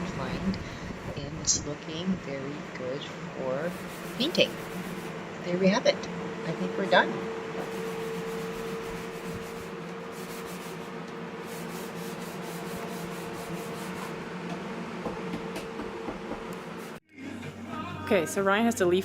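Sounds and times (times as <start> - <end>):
sander pad rasping on surface: 3.6 - 17.0
power sander humming: 3.7 - 16.9.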